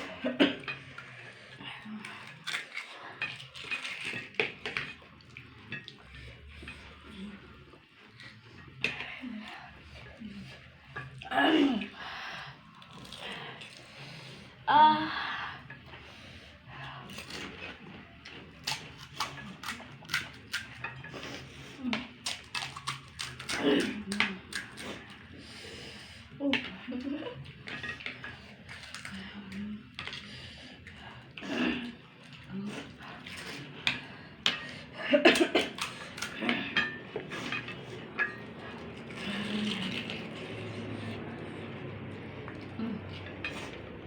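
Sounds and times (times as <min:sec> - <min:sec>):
utensils clinking on bowls: 0:02.2 - 0:11.9, 0:26.6 - 0:29.3, 0:32.2 - 0:41.2.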